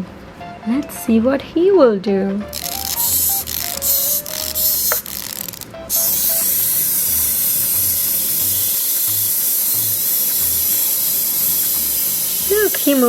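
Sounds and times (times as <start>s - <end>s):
background music with soft beat: 0.2s - 1.5s
wind-up toy motor whirring: 2.5s - 13.0s.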